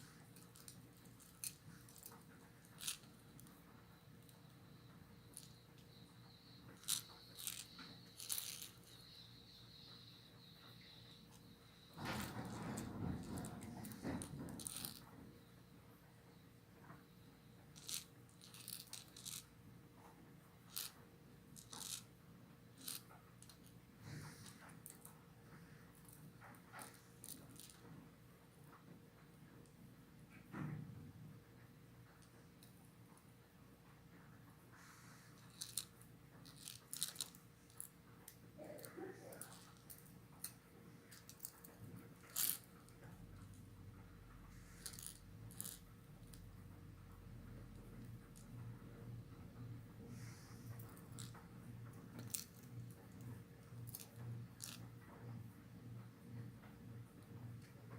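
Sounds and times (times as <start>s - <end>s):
faint steady hum: 0.0s - 57.9s
small hard objects clicking: 6.7s - 9.2s, 13.2s - 15.0s, 17.8s - 19.4s, 20.7s - 21.0s, 21.6s - 22.1s, 22.8s - 23.6s, 35.5s - 37.9s, 41.1s - 42.7s
clicks of small hard objects: 39.3s - 42.7s.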